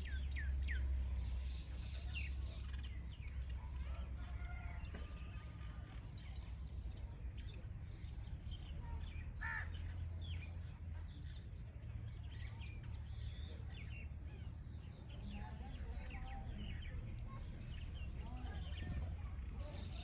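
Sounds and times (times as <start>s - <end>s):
wild birds chirping: 0.0s - 5.2s, 6.1s - 20.0s.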